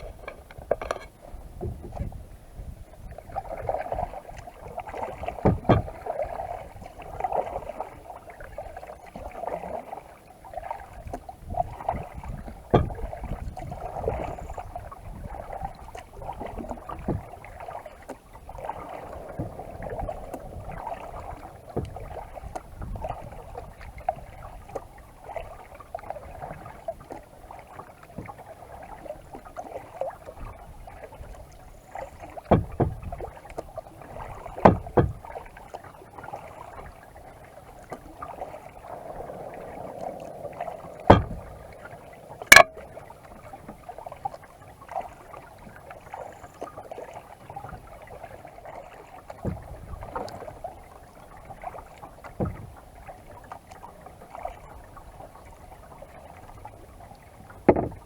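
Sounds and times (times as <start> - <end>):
paddle splashing water: 0.0 - 58.0
sharp knocks: 5.4 - 6.0, 12.7 - 13.0, 32.5 - 33.0, 34.7 - 35.2, 41.1 - 41.6, 42.5 - 42.8.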